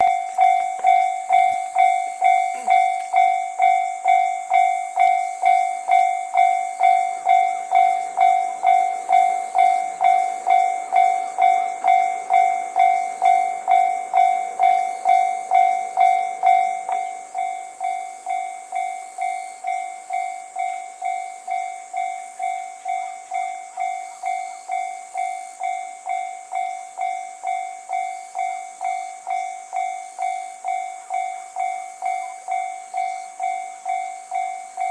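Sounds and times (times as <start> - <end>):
level crossing electronic bell ringing: 0.0 - 25.5.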